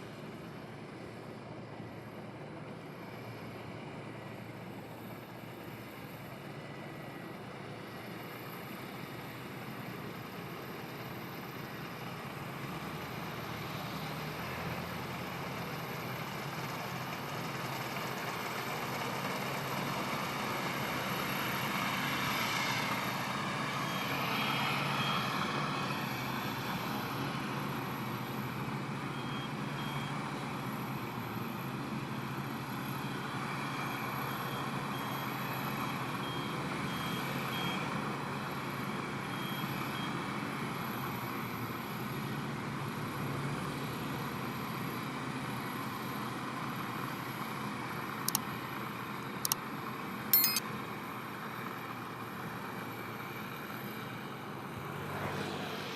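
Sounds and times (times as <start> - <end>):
short high warning beeps: 50.4 - 50.6.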